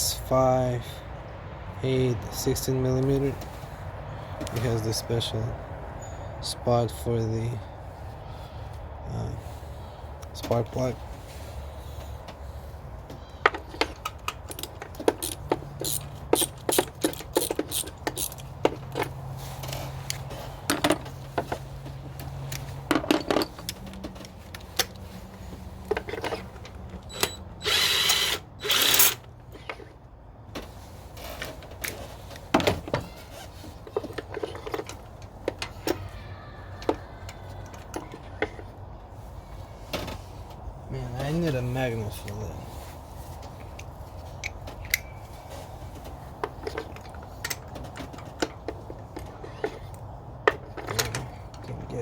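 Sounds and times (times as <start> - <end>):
wrench clicking on metal: 14.3 - 18.5.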